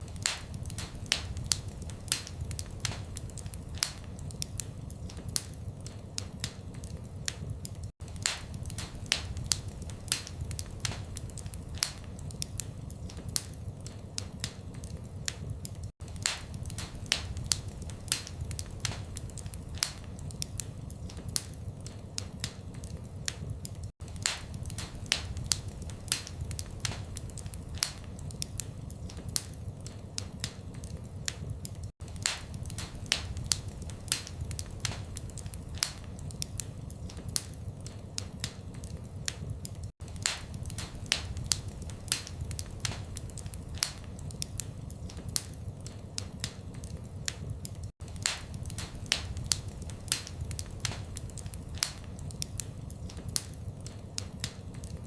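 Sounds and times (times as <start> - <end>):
fire crackling in fireplace: 0.0 - 55.0.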